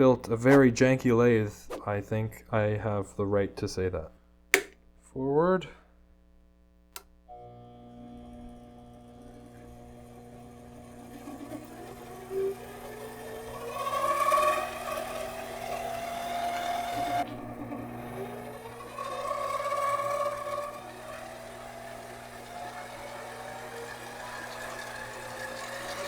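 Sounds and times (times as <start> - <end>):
lathe switch click: 4.6 - 4.8, 6.9 - 7.2
lathe motor humming: 7.3 - 26.0
rising motor whine: 7.4 - 26.0.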